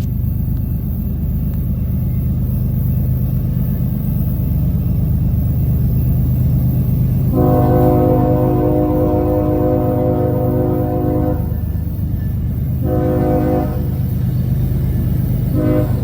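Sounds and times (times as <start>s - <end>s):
locomotive engine rumble: 0.0s - 16.0s
locomotive air horn chord: 7.2s - 11.9s, 12.7s - 14.2s, 15.4s - 16.0s.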